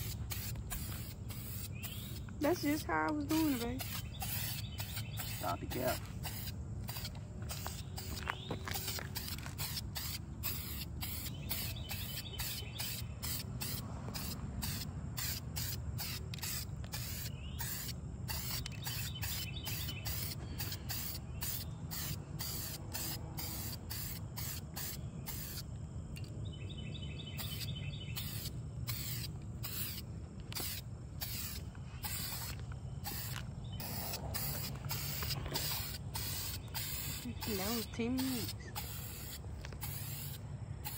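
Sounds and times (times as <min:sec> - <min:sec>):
spray paint can hissing: 0:00.0 - 0:25.7, 0:27.4 - 0:40.9
low background hum: 0:00.0 - 0:40.9.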